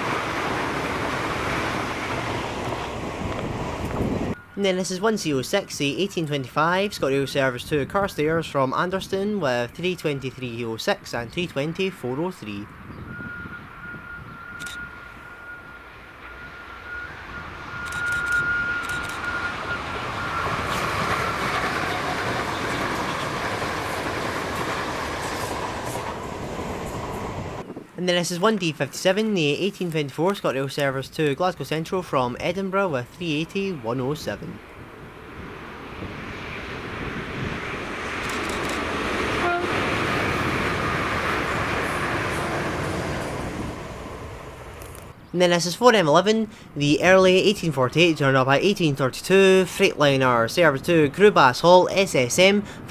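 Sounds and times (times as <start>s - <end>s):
train wheels rushing on rails: 0.0s - 4.4s, 15.6s - 27.7s, 34.7s - 45.1s
short tone: 12.9s - 20.6s.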